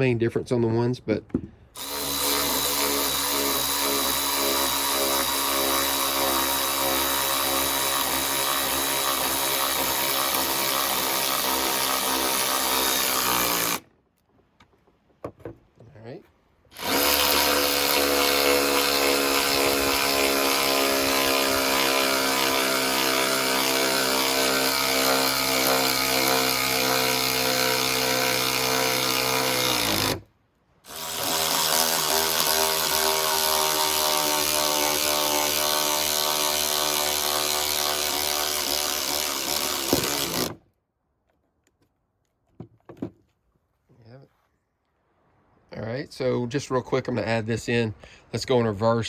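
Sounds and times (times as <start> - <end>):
cordless ratchet motor whine: 16.8 - 22.8.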